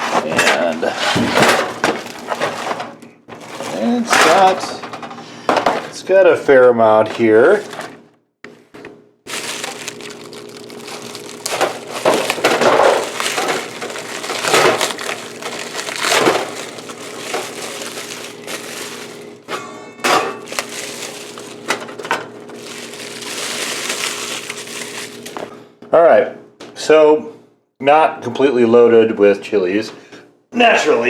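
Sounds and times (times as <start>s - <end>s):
plastic wrapping crinkling: 1.6s - 4.6s, 7.4s - 8.0s, 9.3s - 19.5s, 20.1s - 25.5s
faint steady hum: 7.6s - 26.6s.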